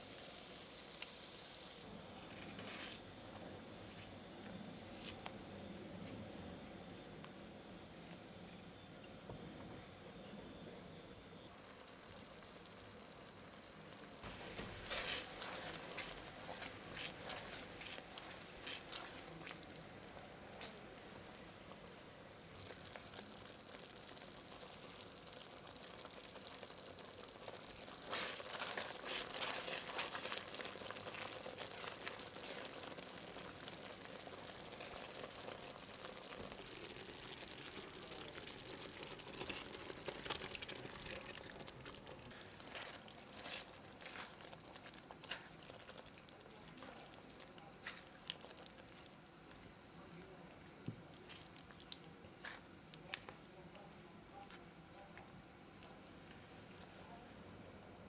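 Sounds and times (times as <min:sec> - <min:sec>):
food sizzling in a pan: 0:00.0 - 0:01.9, 0:11.5 - 0:49.2.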